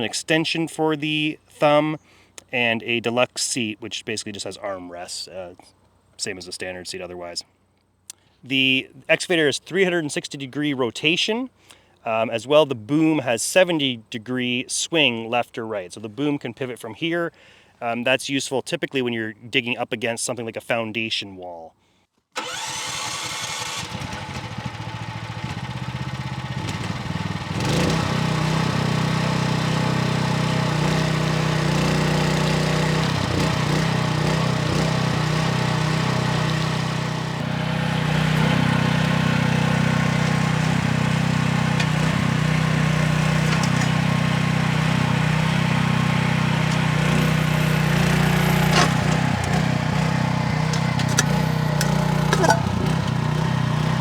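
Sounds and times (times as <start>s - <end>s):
excavator engine humming: 27.2s - 54.0s.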